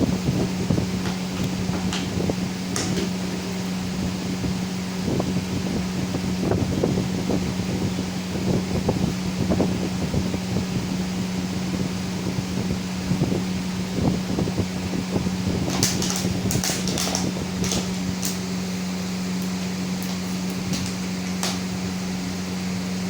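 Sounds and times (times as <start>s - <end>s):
steady hum: 0.0s - 23.0s
plastic bottle knocking and scraping: 1.0s - 3.1s, 15.6s - 18.4s
sharp crackling clicks: 1.0s - 3.1s, 15.6s - 18.5s, 19.4s - 21.7s.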